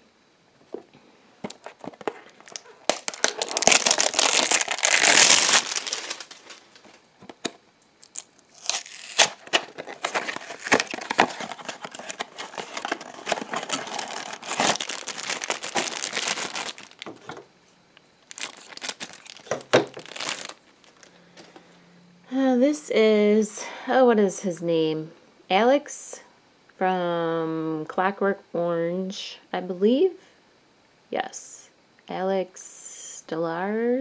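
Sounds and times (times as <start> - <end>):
packaging crinkling and tearing: 1.4 - 17.4, 18.2 - 21.1.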